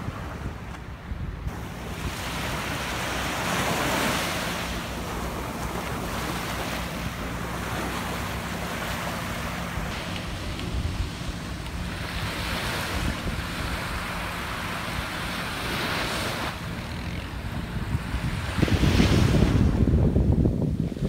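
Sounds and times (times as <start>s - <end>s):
surf washing onto beach: 0.0s - 21.0s
wind buffeting microphone: 0.0s - 21.0s.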